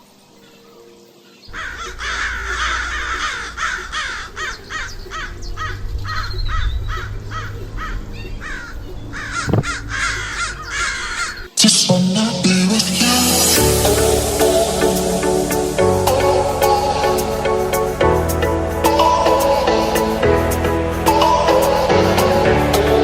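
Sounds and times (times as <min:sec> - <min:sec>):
flock of birds calling: 0:01.5 - 0:11.6
steady low rumble: 0:01.5 - 0:11.6
thump: 0:09.4 - 0:09.8.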